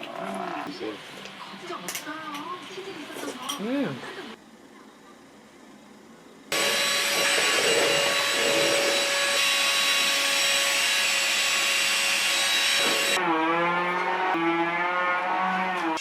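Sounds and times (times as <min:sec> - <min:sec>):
appliance motor whining: 0:06.5 - 0:16.0.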